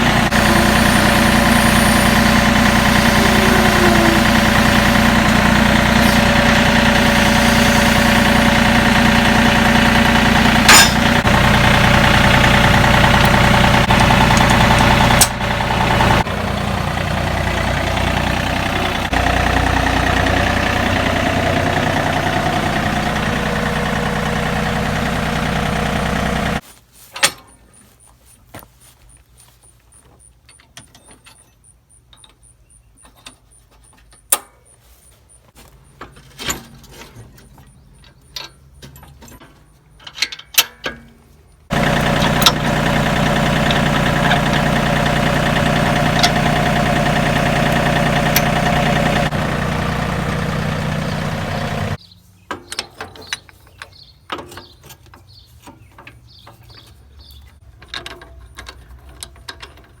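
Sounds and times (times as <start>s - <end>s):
machine motor running: 0.0s - 26.6s, 41.7s - 52.0s
metal clicks and knocks: 36.0s - 41.2s, 52.5s - 56.9s, 57.7s - 60.0s.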